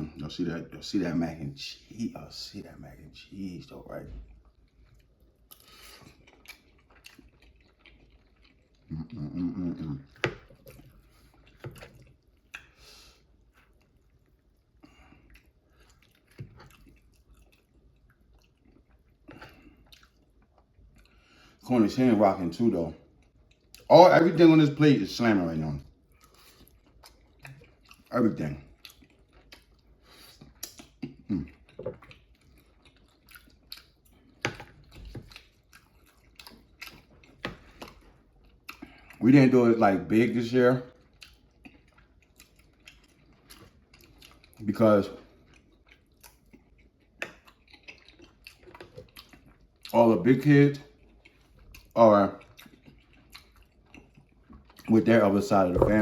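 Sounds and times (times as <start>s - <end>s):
person chewing soft food: 3.9s - 21.6s, 23.0s - 23.9s, 25.8s - 39.2s, 40.9s - 56.0s
soft thuds: 55.7s - 56.0s.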